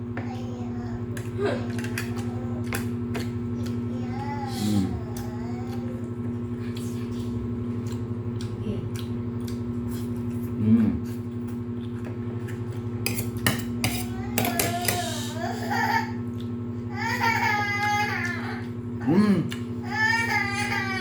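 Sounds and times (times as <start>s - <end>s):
dishes and cutlery clinking: 13.1s - 15.1s.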